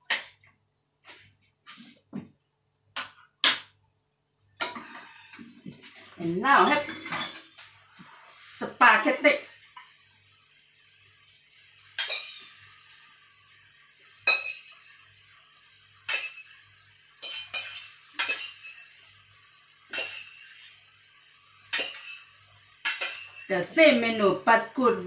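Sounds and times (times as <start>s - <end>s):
metal utensil clanking on pan: 6.5s - 7.6s, 11.9s - 13.0s, 14.2s - 15.1s, 16.0s - 19.2s, 19.9s - 20.9s, 21.7s - 23.5s.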